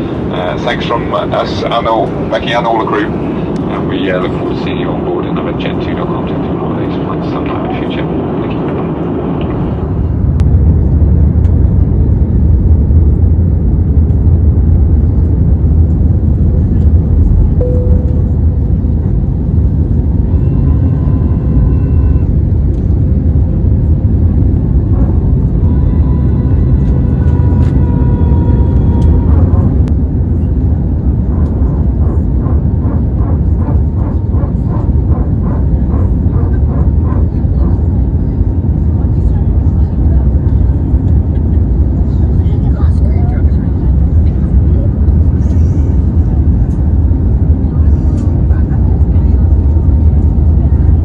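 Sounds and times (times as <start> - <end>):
airliner cabin engine rumble: 0.0 - 51.0.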